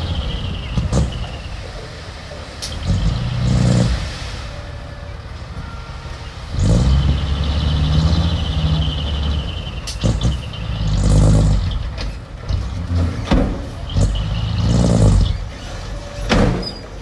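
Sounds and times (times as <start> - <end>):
diesel engine revving: 0.0 - 17.0.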